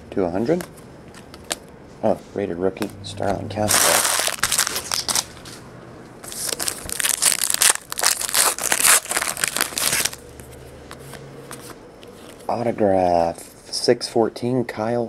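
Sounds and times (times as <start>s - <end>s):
trading cards rustling: 3.7s - 5.5s.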